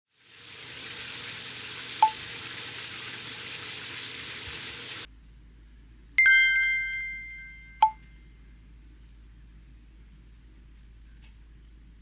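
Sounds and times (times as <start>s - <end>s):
short sharp ping: 6.2s - 8.0s.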